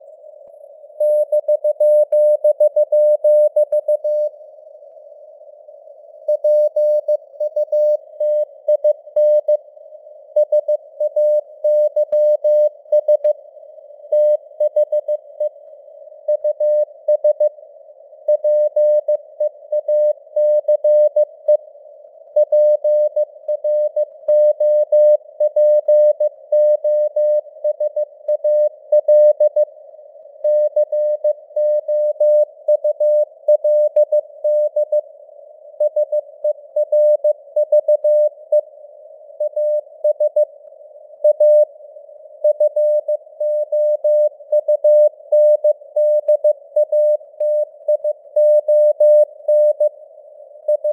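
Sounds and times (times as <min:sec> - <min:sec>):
morse code beeps: 0:50.7 - 0:50.9.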